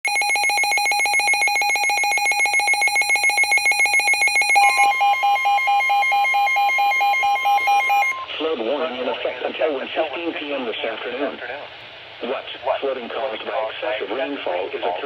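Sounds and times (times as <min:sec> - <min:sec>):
pulsing electronic alarm beep: 0:00.1 - 0:08.3
steady high tone: 0:01.2 - 0:08.4.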